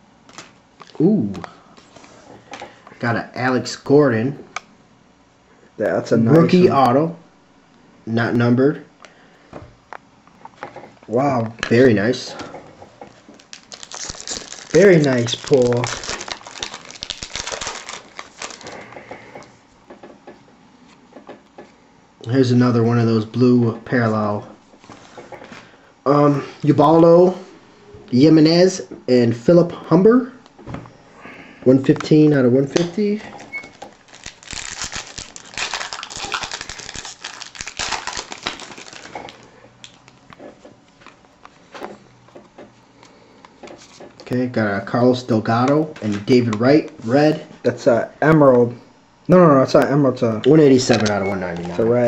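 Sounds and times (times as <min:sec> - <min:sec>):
wrapper and cards crinkling: 0:13.1 - 0:19.0, 0:32.8 - 0:40.3, 0:45.6 - 0:47.0, 0:50.8 - 0:52.0.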